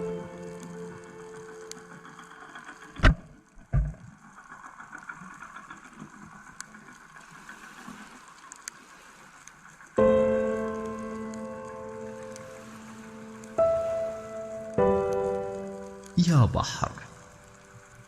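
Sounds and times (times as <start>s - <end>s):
calm ambient keyboard music: 0.0s - 3.0s, 9.9s - 18.0s
low thumps: 3.0s - 4.1s.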